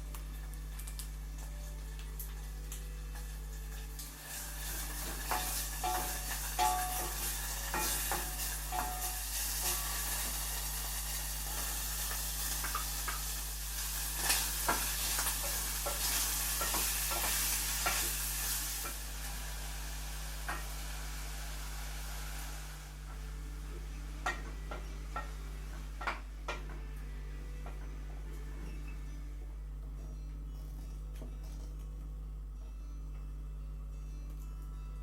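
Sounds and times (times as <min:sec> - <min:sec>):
food sizzling in frying pan: 0:00.0 - 0:28.2
steady low hum: 0:18.4 - 0:35.0.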